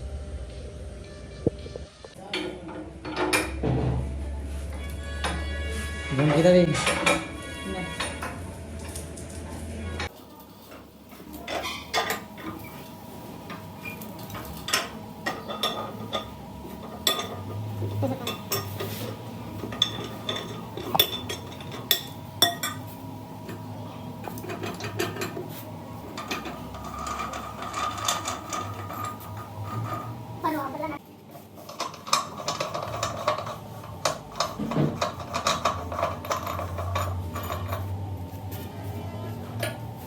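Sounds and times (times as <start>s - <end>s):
metal tools clinking: 13.8s - 22.9s, 24.2s - 30.1s, 31.6s - 38.0s.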